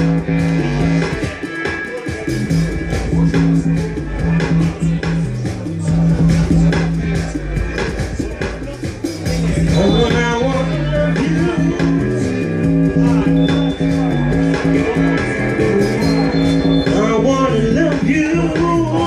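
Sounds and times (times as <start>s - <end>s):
dub reggae music: 0.0s - 19.0s
guitar: 0.0s - 19.0s
heavy bassline: 0.0s - 19.0s
person's voice: 16.9s - 19.0s.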